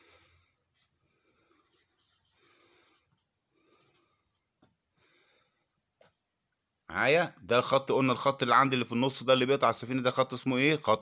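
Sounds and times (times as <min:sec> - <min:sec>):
scratching of writing: 0:00.6 - 0:04.7.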